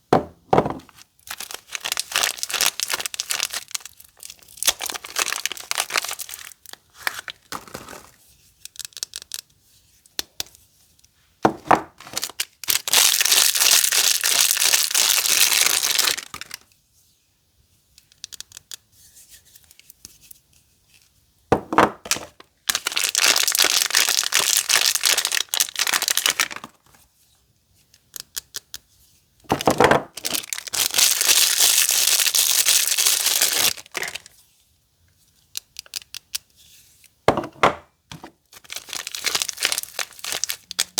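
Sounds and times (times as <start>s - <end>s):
packaging crinkling: 0.9s - 8.2s, 12.0s - 16.6s, 22.1s - 26.8s, 30.1s - 34.3s, 38.5s - 40.9s
packaging tearing: 1.3s - 8.2s, 12.0s - 16.6s, 22.1s - 26.7s, 30.2s - 34.3s, 38.6s - 40.9s.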